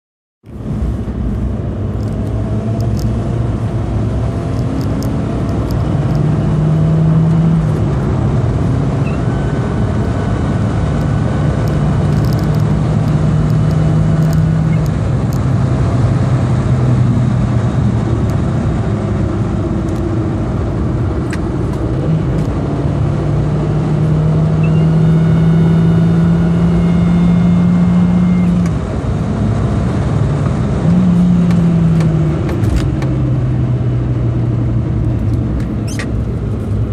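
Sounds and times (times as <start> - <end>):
road noise: 0.4 - 36.9
car engine accelerating: 0.5 - 36.9.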